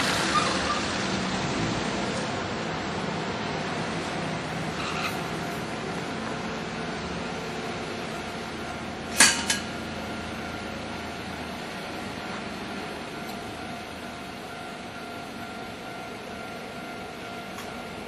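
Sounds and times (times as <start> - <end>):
vehicle low rumble: 0.0 - 16.0
steady street hum: 0.0 - 18.0
wheels clacking over rails: 9.0 - 10.0.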